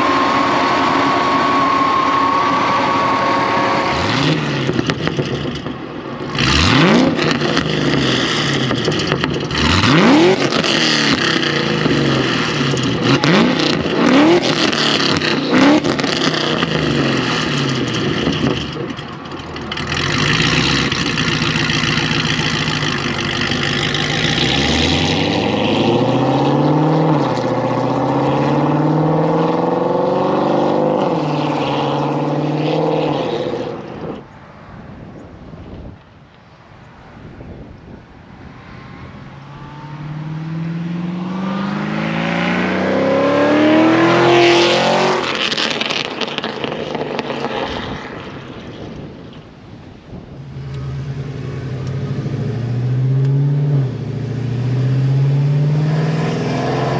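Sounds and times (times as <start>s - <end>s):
car engine revving: 0.0s - 34.2s, 38.2s - 48.4s, 50.4s - 56.9s
exhaust pops and crackles: 4.6s - 6.5s, 7.1s - 9.7s, 17.4s - 24.2s, 45.3s - 49.6s
car accelerating through gears: 19.7s - 34.2s, 38.5s - 47.9s, 50.5s - 56.9s.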